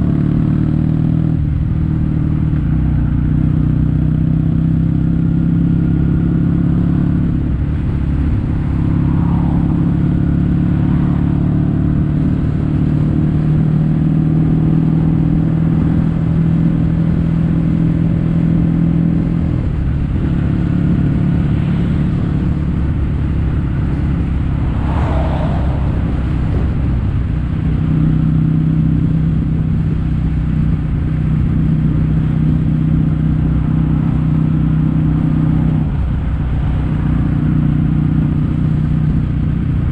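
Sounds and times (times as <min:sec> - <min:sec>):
motorcycle engine running: 0:26.0 - 0:39.9.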